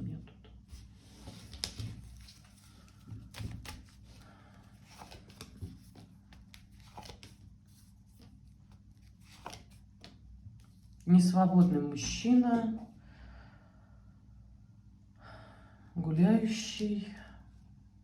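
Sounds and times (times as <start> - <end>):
cards clicking and rustling: 1.2 - 4.2, 4.8 - 10.2.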